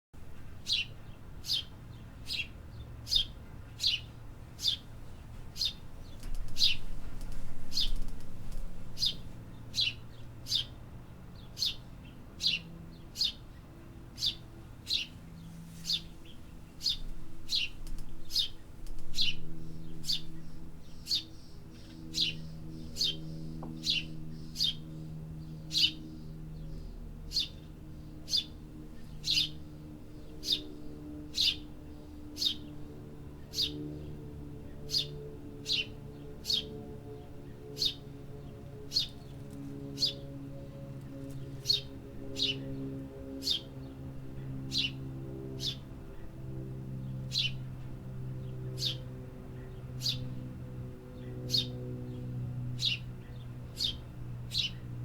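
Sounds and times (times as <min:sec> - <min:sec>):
low urban hum: 0:00.2 - 0:55.0
bird chirping: 0:00.4 - 0:04.9, 0:05.6 - 0:10.8, 0:11.4 - 0:13.6, 0:14.2 - 0:32.7, 0:33.4 - 0:36.7, 0:37.7 - 0:38.0, 0:38.9 - 0:39.4, 0:40.0 - 0:40.3, 0:41.6 - 0:43.7, 0:44.7 - 0:45.0, 0:45.6 - 0:45.8, 0:47.2 - 0:47.6, 0:48.4 - 0:50.4, 0:51.2 - 0:52.2, 0:52.8 - 0:54.9.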